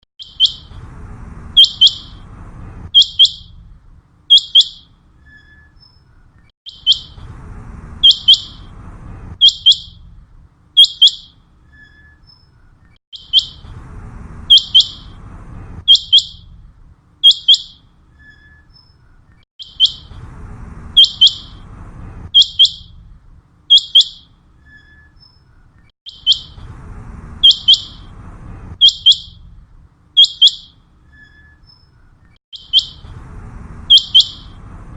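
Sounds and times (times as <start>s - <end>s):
faint low rumble: 0.4s - 11.8s, 12.5s - 18.2s, 19.0s - 24.7s, 25.3s - 31.1s, 31.9s - 34.9s
quail calling: 6.7s - 7.2s, 8.0s - 8.7s, 26.1s - 26.6s, 27.4s - 28.1s, 30.2s - 30.8s, 33.9s - 34.6s.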